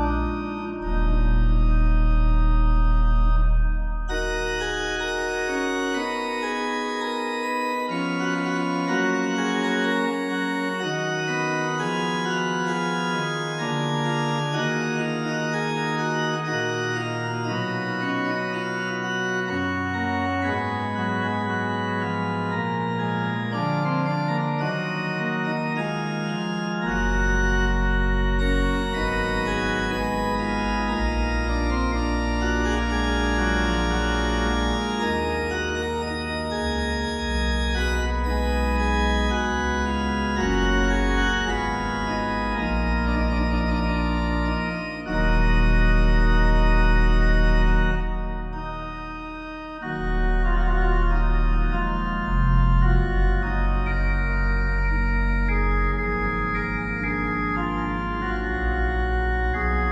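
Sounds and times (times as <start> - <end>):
deep bass notes: 0.0 - 6.5, 26.8 - 59.9
slow organ chords: 0.0 - 59.9.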